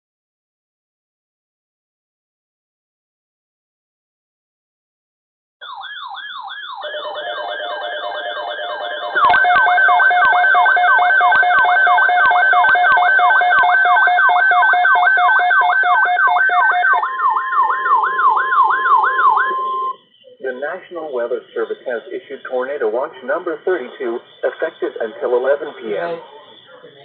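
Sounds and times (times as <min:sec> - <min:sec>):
electronic sirens yelping: 0:05.6 - 0:27.0.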